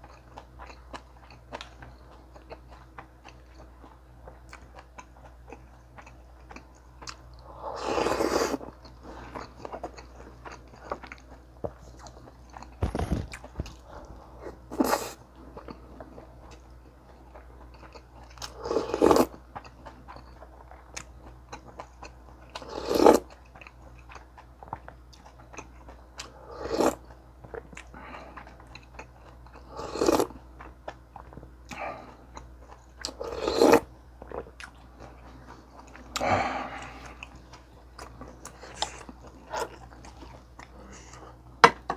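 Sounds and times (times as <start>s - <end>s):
person chewing: 0.0s - 41.4s
crunchy bites: 12.7s - 13.8s.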